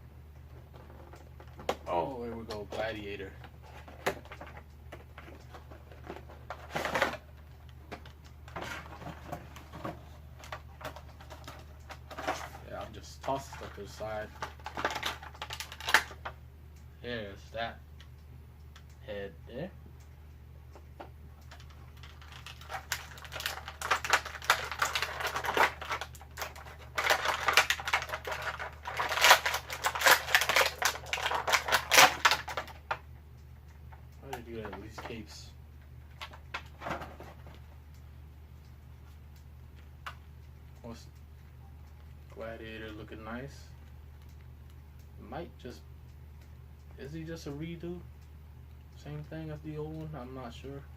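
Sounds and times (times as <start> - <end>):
steady low hum: 0.0 - 50.9
plastic packaging crinkle: 2.7 - 16.3, 21.4 - 33.1
plastic packaging rustling: 2.7 - 16.3, 21.5 - 33.1.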